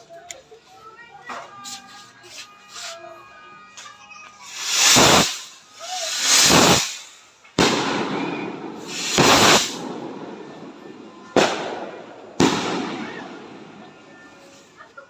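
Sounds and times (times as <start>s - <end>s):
fireworks bangs: 4.4s - 14.5s
fireworks whooshing: 4.4s - 14.8s.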